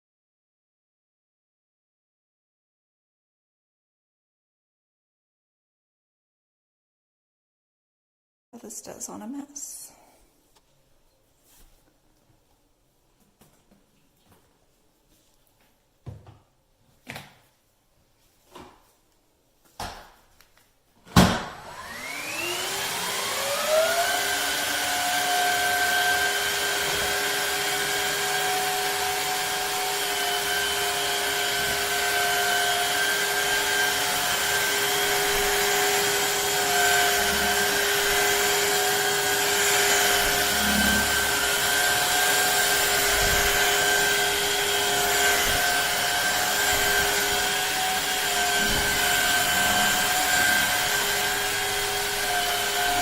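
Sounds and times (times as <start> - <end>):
vacuum motor whine: 21.2 - 53.0.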